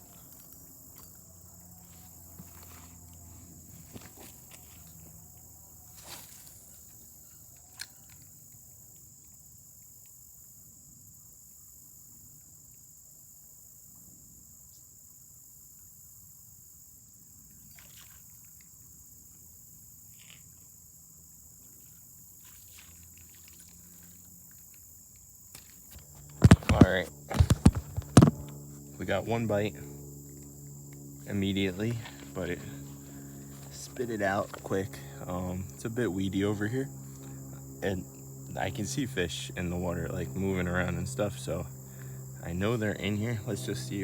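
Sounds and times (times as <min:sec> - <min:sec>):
crickets chirring: 0:00.0 - 0:44.0
faint clicks and taps: 0:25.9 - 0:28.7.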